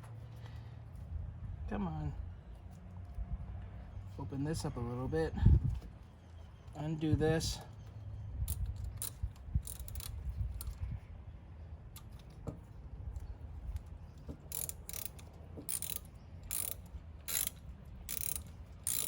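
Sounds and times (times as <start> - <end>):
ratchet wrench clicking: 8.5 - 10.8, 13.7 - 19.0.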